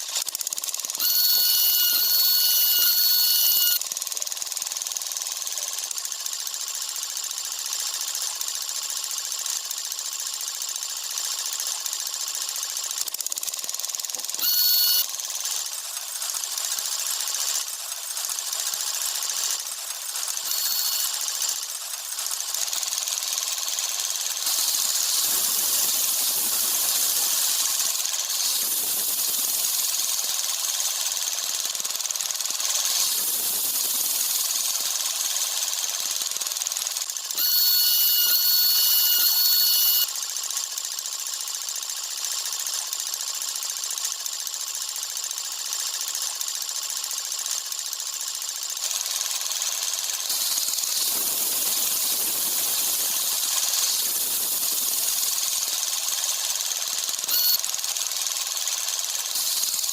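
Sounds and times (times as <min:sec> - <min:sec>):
drilling machine clatter: 0:00.0 - 0:40.1, 0:45.6 - 0:59.9
high whistling tone: 0:01.0 - 0:03.8, 0:14.4 - 0:15.0, 0:37.4 - 0:40.1.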